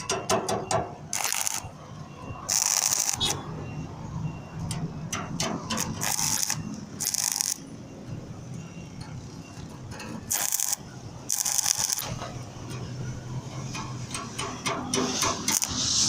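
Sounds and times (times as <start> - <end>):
crackling welding arc: 1.1 - 1.7, 2.5 - 3.4, 5.7 - 7.6, 10.3 - 12.4, 14.1 - 16.0.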